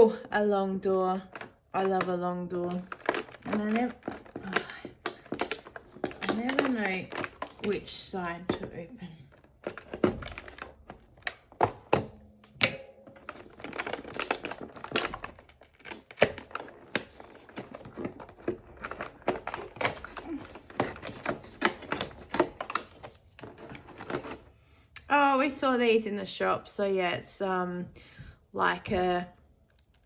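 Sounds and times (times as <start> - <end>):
packaging crinkling: 1.3 - 24.5
cardboard tearing along perforations: 13.6 - 22.8.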